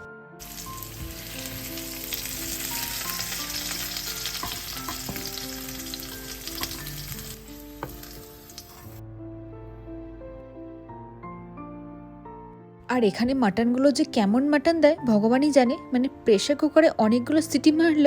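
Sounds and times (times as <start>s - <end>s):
hot oil sizzling: 0.4s - 9.0s.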